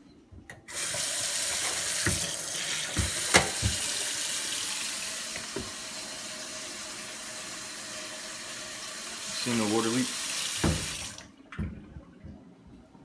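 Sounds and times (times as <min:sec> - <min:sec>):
faucet water running into sink: 0:00.7 - 0:11.3.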